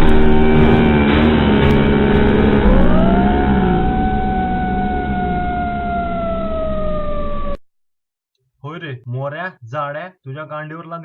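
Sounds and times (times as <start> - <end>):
low rumbling noise: 0.0 - 7.6
siren-like wail: 0.0 - 7.6.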